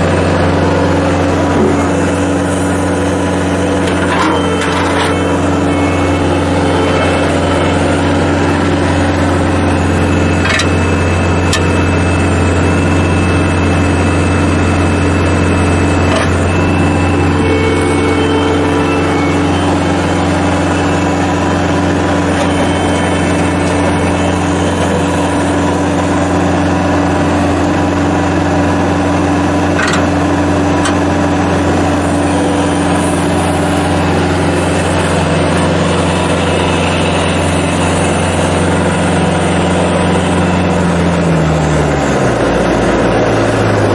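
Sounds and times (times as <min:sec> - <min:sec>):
diesel engine at high revs: 0:00.0 - 0:43.9.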